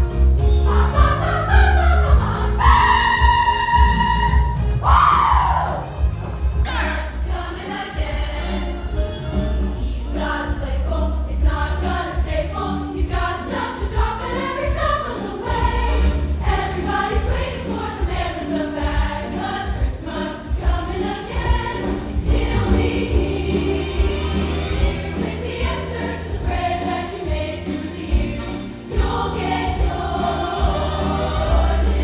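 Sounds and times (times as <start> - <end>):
steady bass: 0.0 - 14.8, 20.6 - 32.0
choir singing a holiday song: 0.0 - 32.0.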